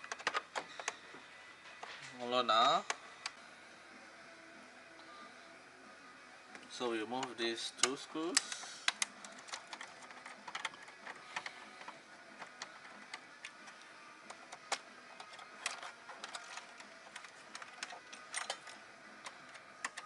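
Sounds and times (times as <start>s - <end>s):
metal parts being handled: 7.2s - 20.0s.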